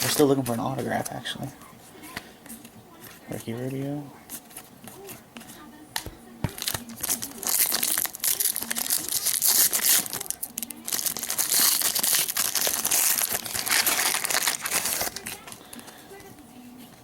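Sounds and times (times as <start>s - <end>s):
foil wrapper crinkling and tearing: 6.5s - 16.0s.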